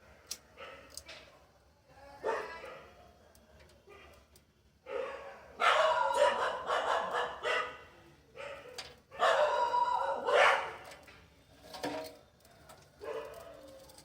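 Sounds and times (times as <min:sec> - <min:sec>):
dog barking: 0:00.6 - 0:00.9, 0:02.2 - 0:03.0, 0:04.8 - 0:10.8, 0:13.0 - 0:13.7.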